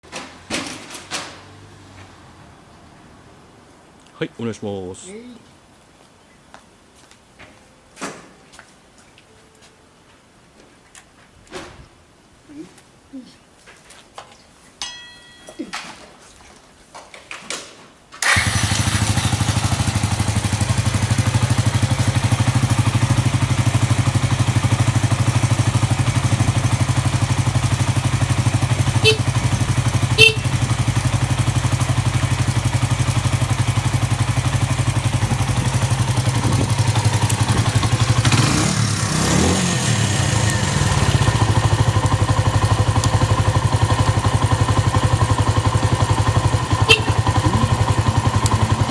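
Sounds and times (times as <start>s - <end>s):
electric starter cranking: 18.2s - 19.4s
motorcycle engine idling: 18.2s - 48.9s.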